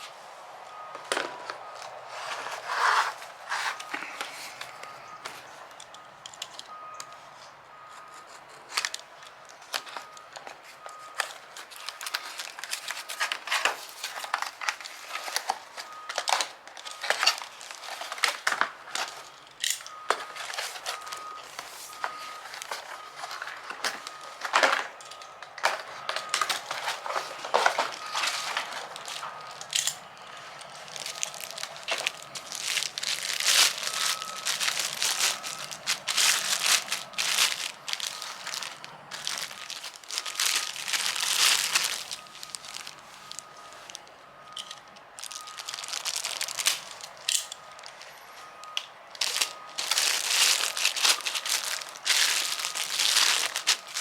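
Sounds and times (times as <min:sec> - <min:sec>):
crinkling and tearing handling noise: 0:00.0 - 0:54.0.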